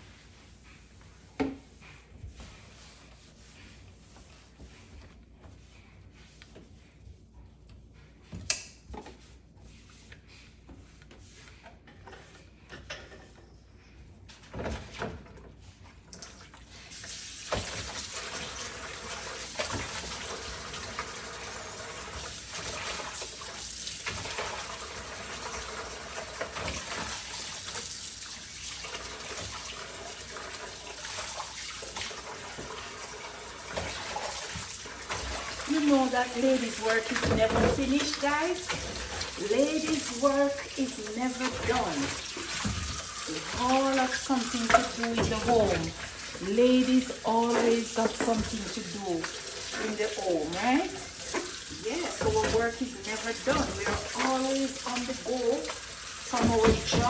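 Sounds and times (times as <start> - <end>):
tap water running into sink: 16.1 - 57.0.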